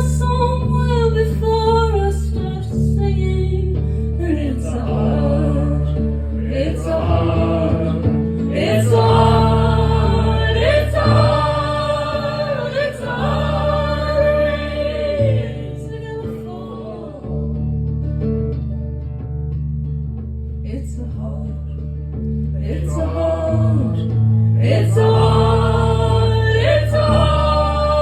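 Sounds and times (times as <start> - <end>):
sustained low chords: 4.2 - 28.0
voices singing held notes: 4.6 - 17.3, 22.7 - 28.0.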